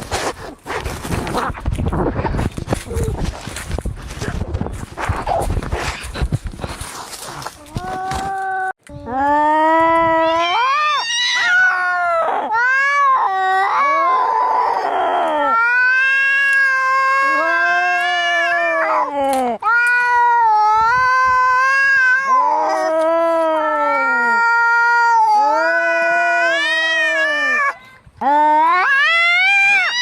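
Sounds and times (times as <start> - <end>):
cats yowling in a fight: 10.1 - 30.0.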